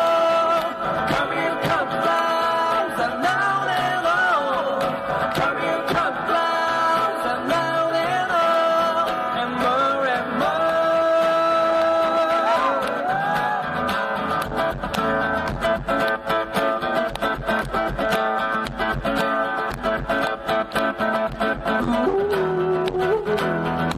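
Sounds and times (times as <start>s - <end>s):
person singing long notes: 0.0s - 13.8s, 21.6s - 23.9s
bass guitar: 0.0s - 23.9s
rhythmic guitar strumming: 0.0s - 23.9s.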